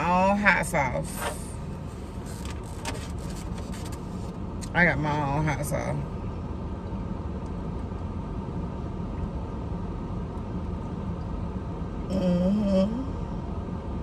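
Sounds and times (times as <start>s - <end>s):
car idling rumble: 0.0s - 14.0s
person humming: 12.1s - 13.2s.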